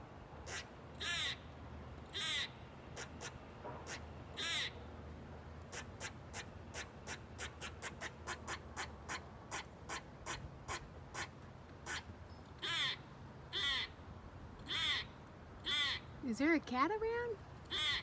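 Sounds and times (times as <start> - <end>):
squirrel rasping squawks: 0.4 - 1.4, 2.1 - 4.8, 5.7 - 14.0, 14.6 - 16.1, 17.7 - 18.0
squirrel barking chirps: 0.5 - 1.4, 2.1 - 4.8, 11.9 - 14.0, 14.7 - 16.1, 17.7 - 18.0.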